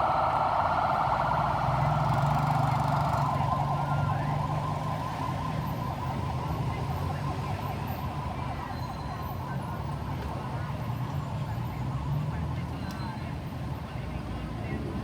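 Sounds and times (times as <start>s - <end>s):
low steady hum: 0.0s - 9.1s
ambulance siren warbling: 0.0s - 12.4s.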